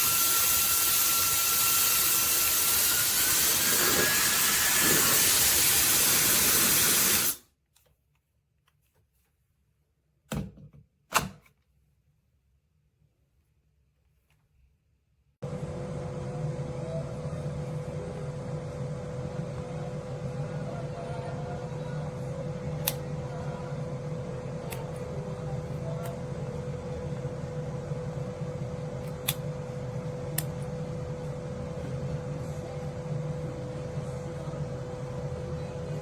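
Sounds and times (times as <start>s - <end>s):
hair dryer whining: 0.0s - 7.4s, 15.4s - 36.0s.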